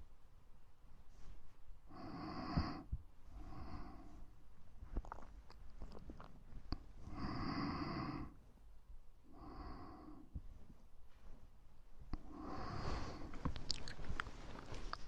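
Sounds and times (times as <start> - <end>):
breathy exhale: 1.9 - 4.3, 7.1 - 8.4, 9.3 - 10.3, 12.2 - 13.4
mouth clicks: 13.4 - 15.0.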